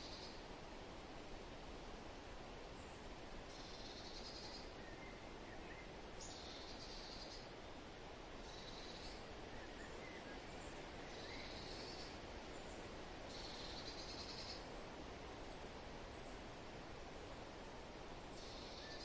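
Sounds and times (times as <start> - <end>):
faint bird chirps: 0.0 - 0.4, 2.8 - 7.5, 8.4 - 14.7, 18.2 - 19.0
soft wind: 0.0 - 19.0.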